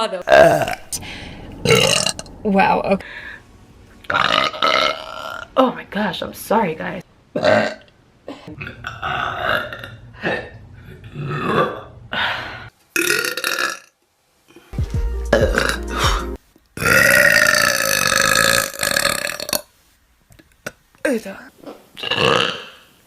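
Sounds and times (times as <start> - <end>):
people burping: 15.5 - 19.5.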